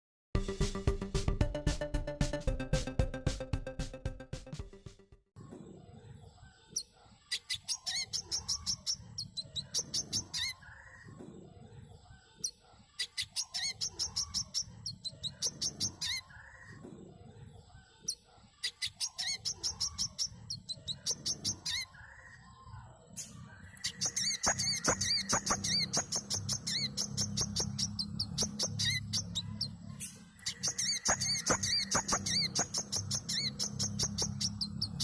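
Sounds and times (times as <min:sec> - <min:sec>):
bird chirping high notes: 0:07.4 - 0:11.0, 0:13.0 - 0:16.7, 0:23.2 - 0:35.0.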